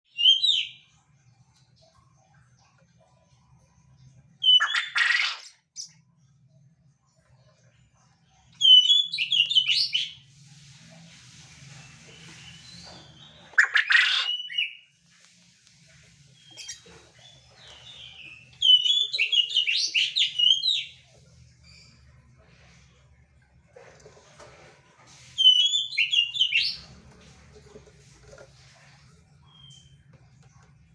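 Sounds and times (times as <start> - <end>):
quail chirping rapidly: 4.5 - 5.9, 13.2 - 14.7, 17.6 - 21.0
harsh quail call: 13.6 - 14.4.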